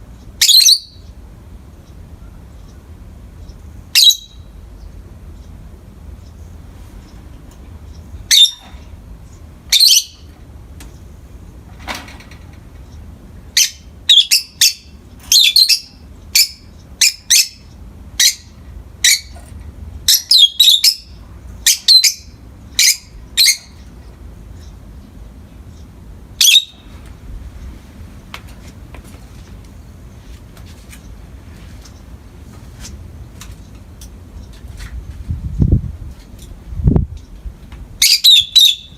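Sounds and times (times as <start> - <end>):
lovebirds chirping: 0.1 - 11.1, 12.8 - 27.8, 38.0 - 38.9.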